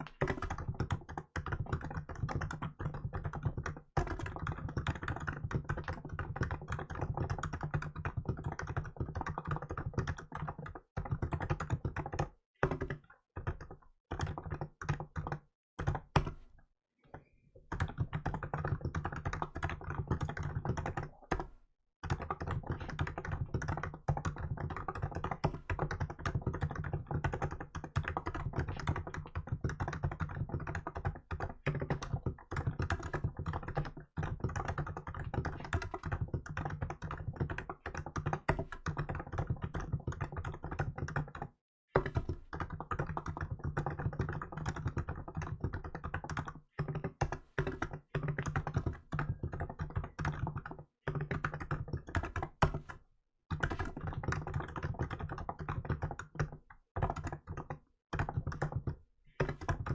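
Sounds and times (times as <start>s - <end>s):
fast keyboard typing: 0.0s - 16.4s, 17.2s - 59.9s.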